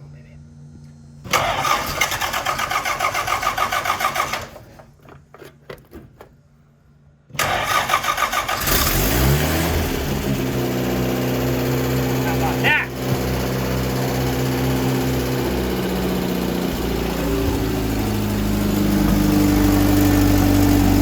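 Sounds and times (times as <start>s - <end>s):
starter motor cranking: 1.3s - 4.7s, 7.4s - 21.0s
car engine revving and idling: 7.4s - 21.0s.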